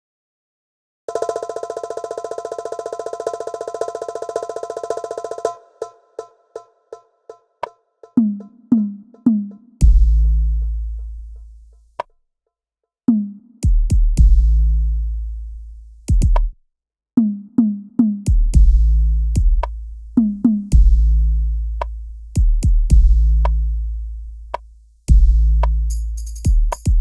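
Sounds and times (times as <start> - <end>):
percussion music drum strikes: 7.6 - 11.5, 13.1 - 14.5, 16.1 - 16.5, 18.2 - 21.1, 22.4 - 23.6, 25.1 - 27.0
deep bass boom: 9.8 - 11.5, 14.2 - 15.2, 18.4 - 24.0, 25.1 - 25.9.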